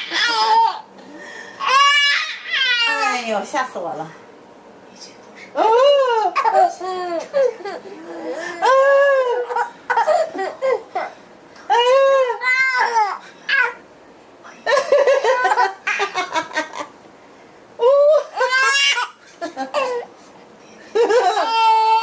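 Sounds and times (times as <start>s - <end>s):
baby squealing and laughing: 0.0s - 0.8s, 1.6s - 3.1s, 12.3s - 13.8s, 17.9s - 19.2s, 21.4s - 22.0s.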